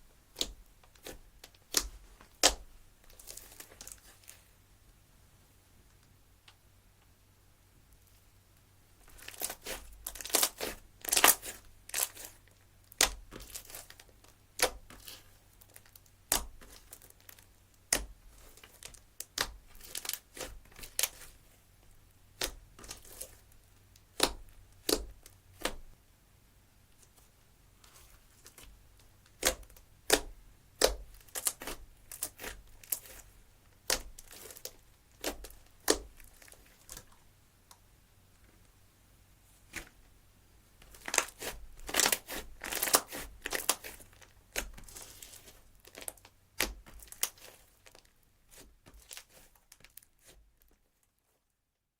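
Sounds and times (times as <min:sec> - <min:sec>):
slime squishing with clicks and pops: 0:12.8 - 0:21.2, 0:22.4 - 0:23.4, 0:24.0 - 0:25.9, 0:29.2 - 0:33.2, 0:33.8 - 0:37.2, 0:45.9 - 0:49.2.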